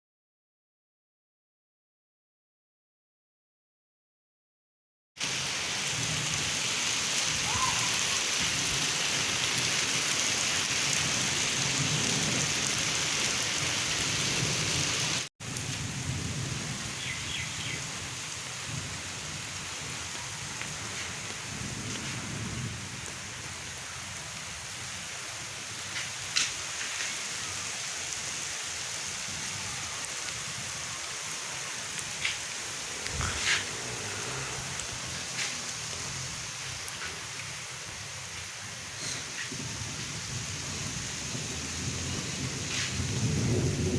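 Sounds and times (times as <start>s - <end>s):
heavy rain hissing: 5.2s - 43.9s
low rumbles: 32.9s - 36.5s.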